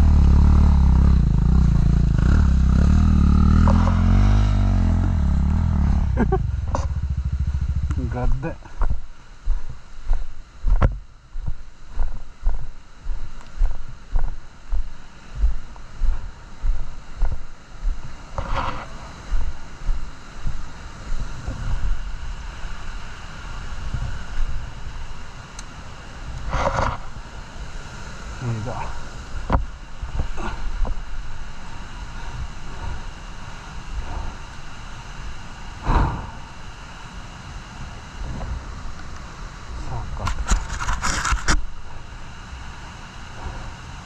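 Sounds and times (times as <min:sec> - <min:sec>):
low thumps: 0:00.0 - 0:18.0
off-road motorcycle engine drone: 0:00.0 - 0:44.0
wind on microphone: 0:03.6 - 0:25.3, 0:28.9 - 0:36.8.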